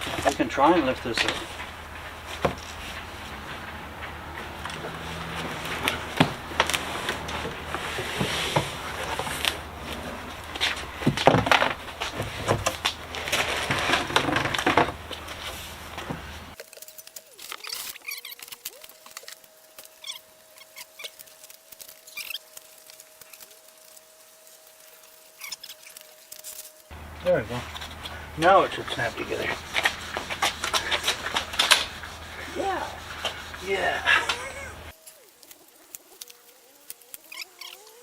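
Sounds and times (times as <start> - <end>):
cardboard box rustling and tearing: 5.2 - 26.9.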